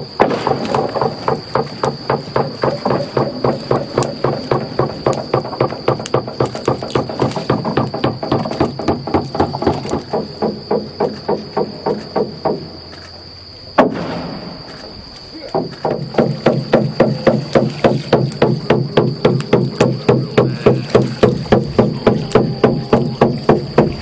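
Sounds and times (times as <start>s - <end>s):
rapid wooden knocking: 0.8s - 12.7s, 15.6s - 24.0s
steady high whine: 8.8s - 17.0s.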